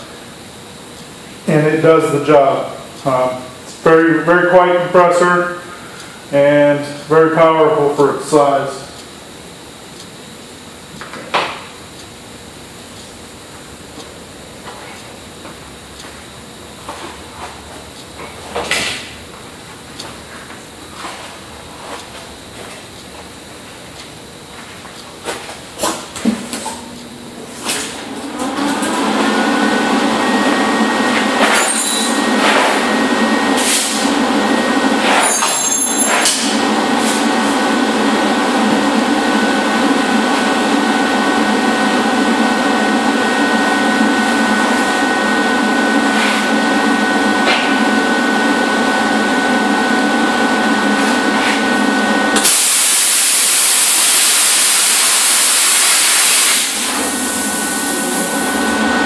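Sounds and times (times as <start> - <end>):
plasma cutter hissing hum: 52.3 - 59.0.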